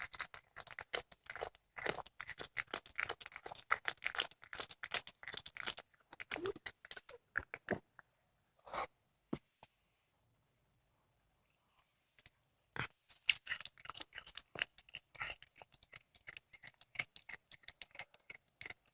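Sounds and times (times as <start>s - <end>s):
cat crunching on bones: 0.0s - 7.6s, 13.2s - 18.9s.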